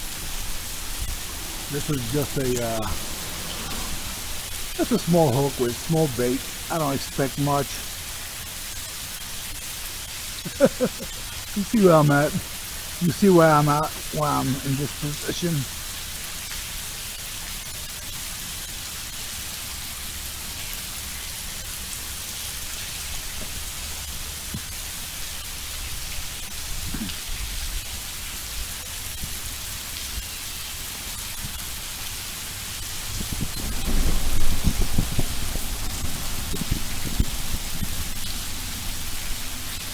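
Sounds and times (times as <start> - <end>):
low rumble: 0.0 - 4.9, 32.8 - 39.9
heavy rain pouring: 0.0 - 39.9.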